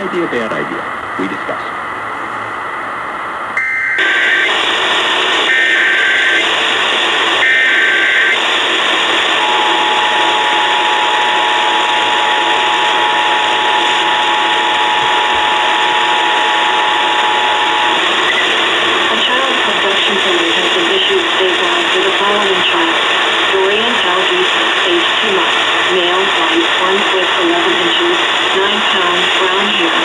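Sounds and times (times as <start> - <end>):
radio hiss and static: 0.0 - 30.0
two-tone attention signal: 3.6 - 4.5
buzzy data bursts: 3.6 - 22.9.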